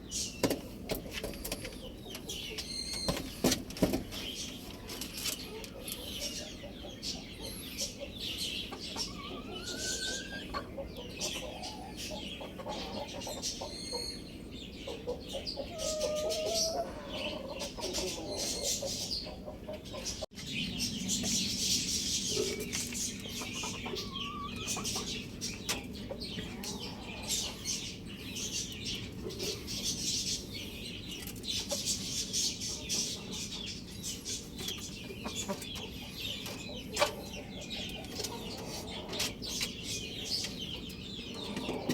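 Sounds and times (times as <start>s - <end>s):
chickens clucking: 0.0s - 41.9s.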